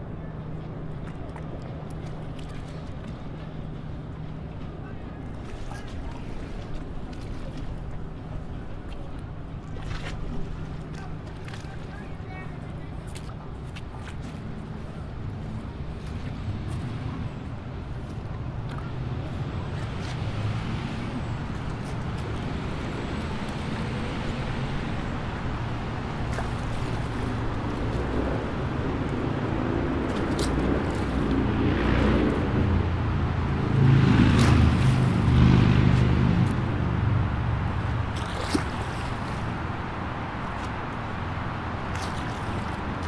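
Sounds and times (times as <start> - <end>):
highway traffic noise: 0.0 - 43.0
vehicle passing close: 26.3 - 39.7.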